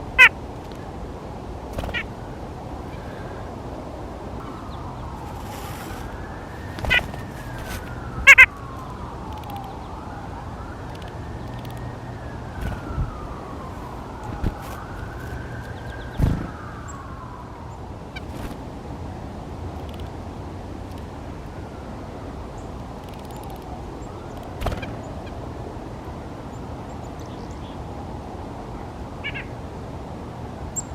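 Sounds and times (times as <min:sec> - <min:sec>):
emergency siren wailing: 0:04.4 - 0:18.2.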